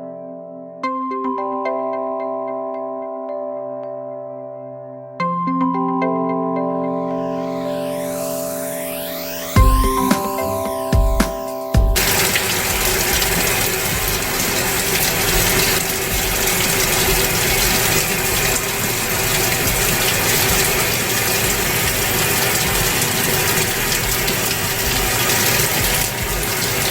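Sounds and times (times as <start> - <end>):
electronic music: 0.0 - 26.9
water rushing into washing machine: 12.0 - 26.9.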